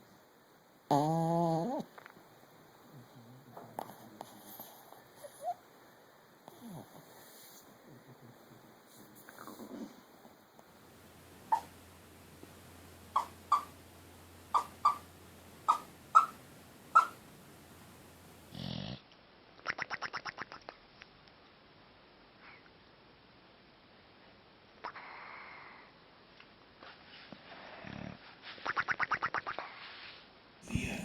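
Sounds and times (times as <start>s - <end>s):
dog whimpering: 0.9s - 1.9s, 11.5s - 11.8s, 13.1s - 13.8s, 14.5s - 17.2s.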